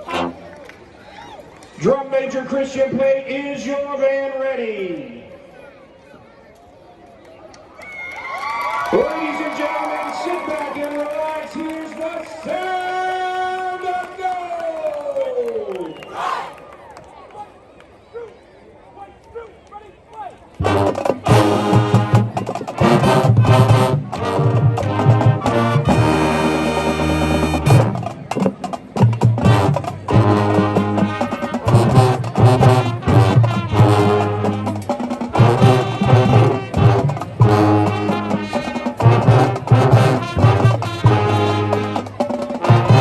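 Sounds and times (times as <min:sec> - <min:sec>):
marching band playing: 0:00.0 - 0:00.7, 0:20.6 - 0:43.0.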